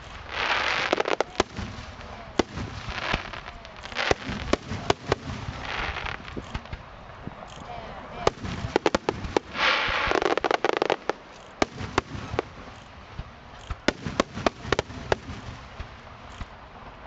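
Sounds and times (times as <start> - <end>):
fireworks crackling: 0.0 - 17.0
fireworks sharp bangs: 0.0 - 17.0.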